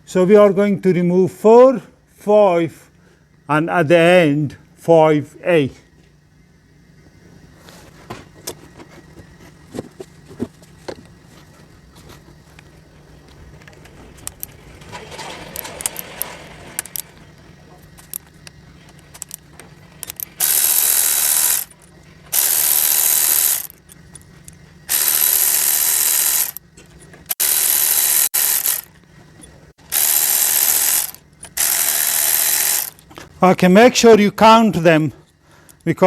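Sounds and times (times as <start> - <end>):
power ratchet running: 14.2 - 17.3, 17.9 - 18.3, 19.0 - 26.6, 27.2 - 29.0, 29.8 - 33.2.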